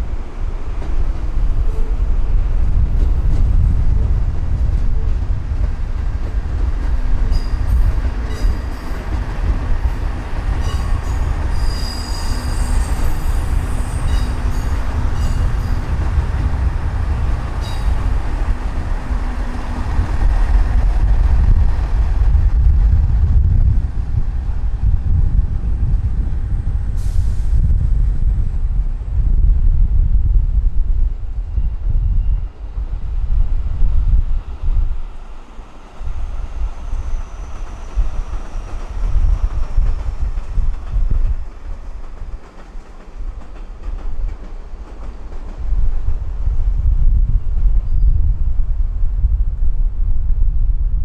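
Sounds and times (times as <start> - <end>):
wind rumble on microphone: 0.0 - 51.0
train wheel squeal: 6.3 - 22.0, 31.5 - 33.1, 34.3 - 45.6, 47.3 - 48.4.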